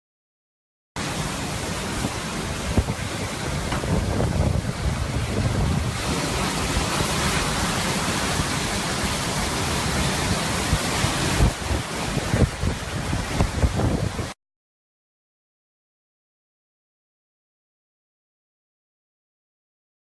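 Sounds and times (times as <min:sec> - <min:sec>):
strong wind blowing: 0:01.0 - 0:14.4
wind buffeting microphone: 0:01.3 - 0:14.4.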